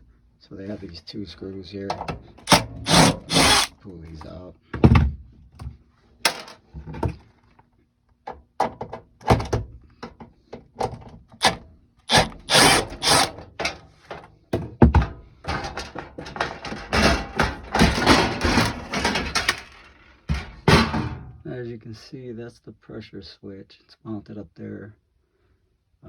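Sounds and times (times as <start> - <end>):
knocks and clunks on sheet metal: 1.9 - 3.7, 10.9 - 21.4
metal panel scraping and clatter: 15.0 - 21.3.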